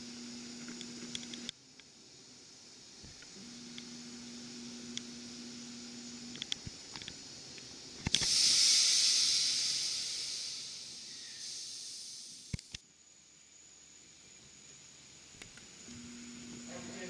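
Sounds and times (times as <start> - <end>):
compressed air hissing: 8.0 - 12.8.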